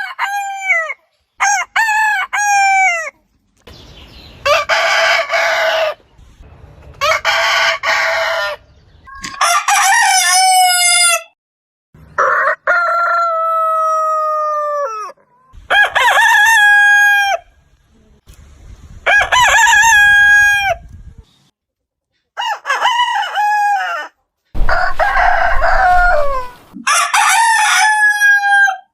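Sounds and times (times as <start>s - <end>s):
roosters crowing: 0.0s - 3.1s, 4.4s - 6.2s, 7.0s - 8.7s, 9.3s - 11.4s, 12.1s - 17.5s, 19.0s - 20.9s, 22.4s - 28.9s.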